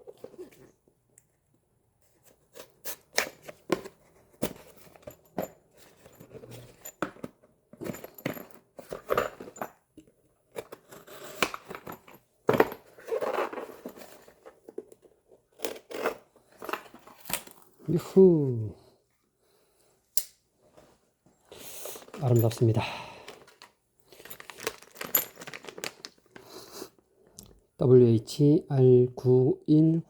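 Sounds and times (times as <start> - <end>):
packaging rustling and tearing: 23.4 - 26.6.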